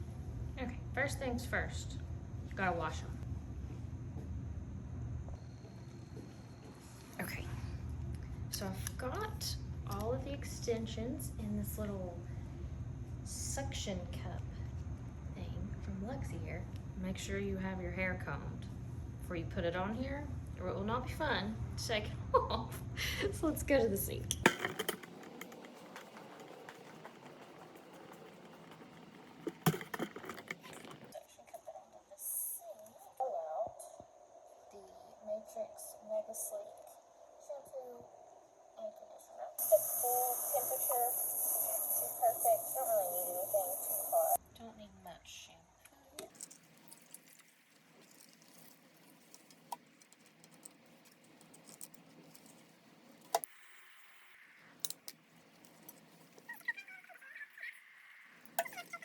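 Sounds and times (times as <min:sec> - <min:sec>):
low steady background noise: 0:00.0 - 0:59.0
objects clicking and knocking: 0:24.2 - 0:31.2, 0:46.2 - 0:59.0
metal clips clicking and jingling: 0:46.2 - 0:53.5, 0:54.8 - 0:56.8.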